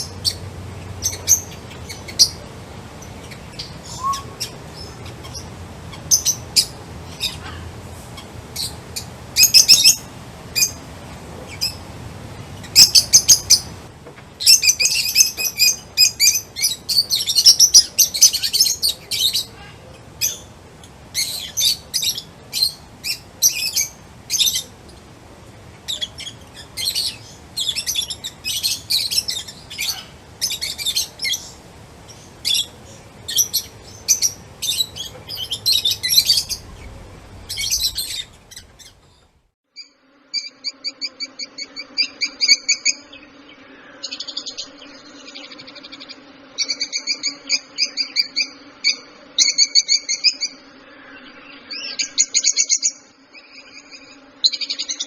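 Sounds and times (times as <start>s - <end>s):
birds chirping and singing: 0.0s - 39.4s.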